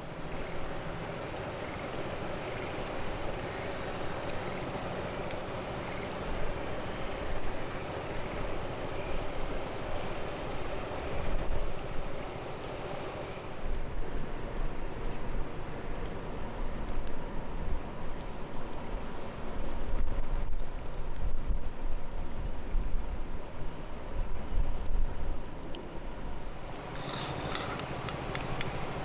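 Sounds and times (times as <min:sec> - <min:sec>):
fire burning and crackling: 0:00.0 - 0:29.0.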